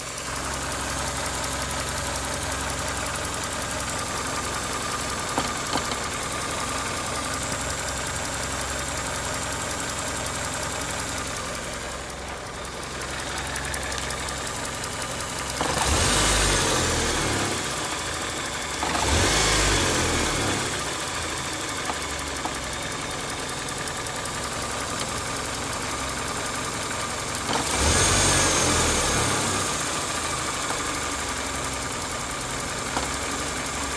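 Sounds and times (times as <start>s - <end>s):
car engine idling with knock: 0.0s - 33.9s
engine revving: 13.1s - 22.0s, 27.4s - 31.4s.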